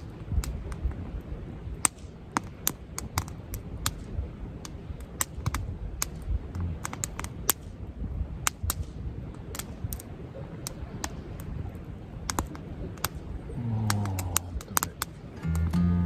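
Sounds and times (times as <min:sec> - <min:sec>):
campfire crackling: 0:00.0 - 0:16.0
low steady rumble: 0:06.2 - 0:07.4, 0:13.4 - 0:16.0.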